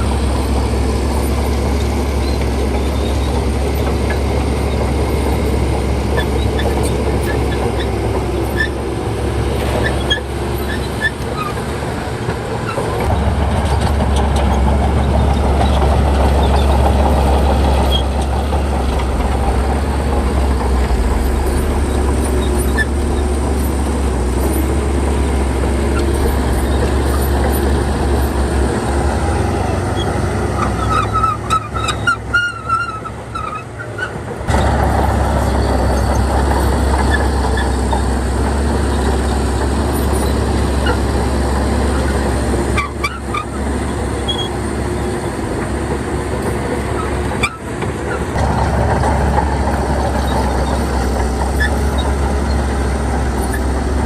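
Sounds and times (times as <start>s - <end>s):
heavy diesel engine under load: 0.0s - 54.0s
high squeaks: 16.4s - 29.0s.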